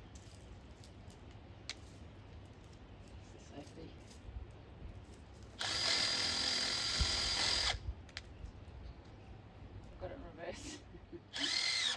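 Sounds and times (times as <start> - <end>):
power drill motor whine: 5.6 - 7.8, 11.3 - 11.9.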